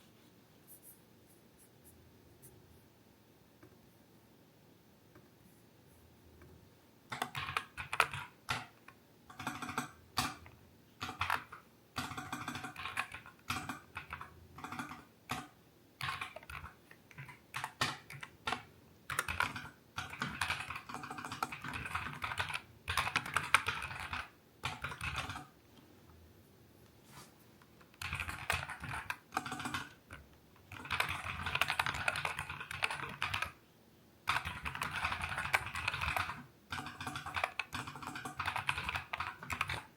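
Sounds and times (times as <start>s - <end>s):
typing on mechanical keyboard: 7.1s - 25.5s, 27.8s - 33.6s, 34.3s - 39.9s.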